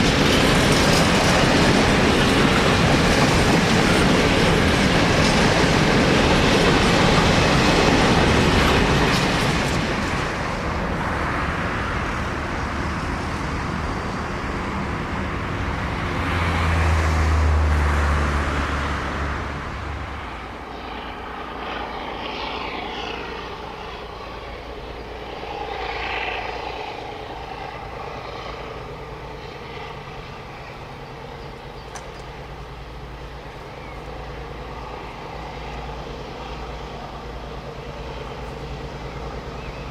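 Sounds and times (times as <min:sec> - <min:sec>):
freight train wheels on rails: 0:00.0 - 0:39.9
low engine hum: 0:09.8 - 0:39.9.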